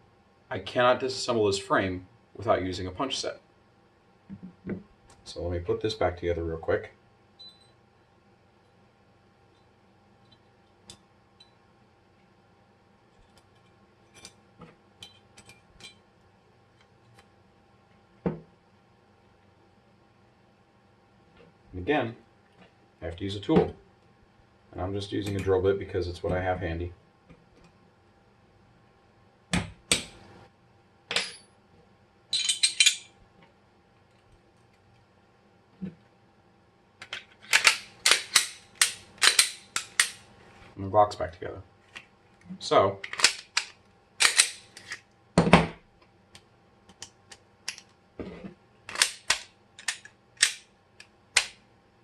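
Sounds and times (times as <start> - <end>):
pistol parts clicking and clacking: 32.4 - 33.1, 37.0 - 40.2, 43.0 - 45.0, 48.9 - 51.6.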